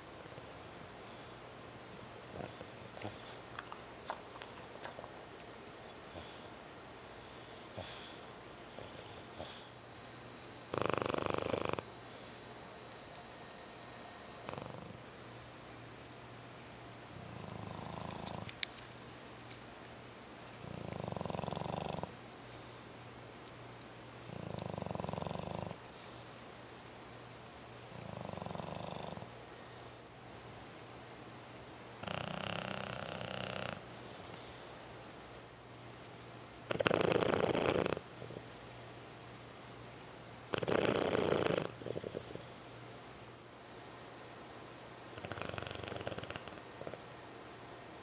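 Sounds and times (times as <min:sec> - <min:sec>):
dog snoring: 0:02.2 - 0:04.2, 0:06.1 - 0:06.5, 0:07.2 - 0:09.8, 0:10.7 - 0:12.4, 0:14.4 - 0:15.4, 0:17.2 - 0:18.6, 0:20.6 - 0:22.9, 0:24.2 - 0:26.4, 0:27.9 - 0:30.0, 0:32.0 - 0:34.8, 0:36.7 - 0:38.6, 0:40.5 - 0:42.6, 0:45.1 - 0:47.1.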